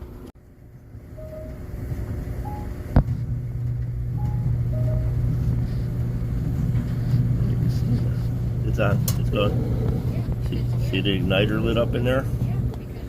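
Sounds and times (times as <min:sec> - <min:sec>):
clothes dryer humming: 0:00.0 - 0:13.0.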